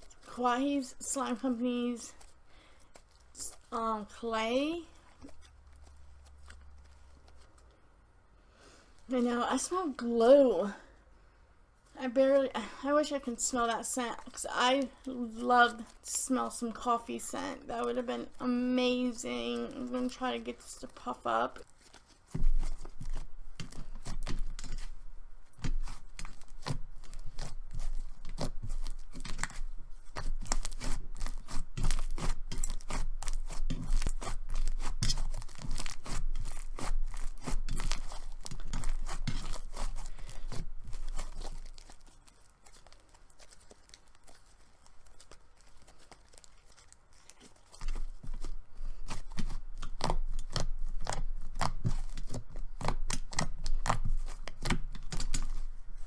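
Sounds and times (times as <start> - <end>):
slime crackling and tearing: 14.0 - 56.0.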